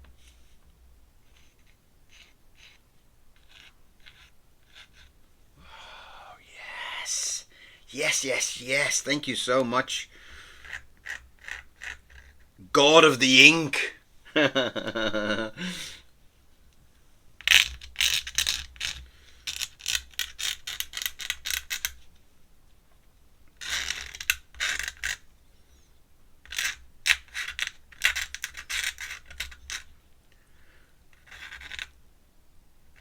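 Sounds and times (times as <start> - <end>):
pen nib scratching on paper: 1.2 - 2.8, 3.4 - 5.1.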